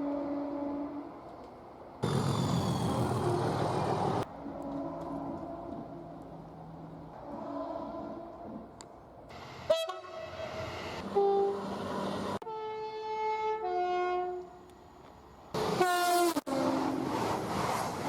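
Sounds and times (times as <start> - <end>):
two-tone train horn: 0.0 - 1.1, 9.7 - 11.6, 12.4 - 14.6, 15.8 - 17.0
train horn blasts: 9.7 - 11.6, 12.4 - 14.6, 15.8 - 17.0.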